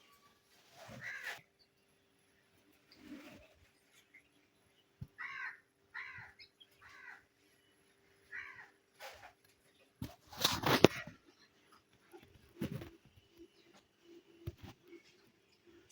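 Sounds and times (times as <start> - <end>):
bird cawing: 1.0 - 1.4, 5.2 - 7.3, 8.3 - 8.8.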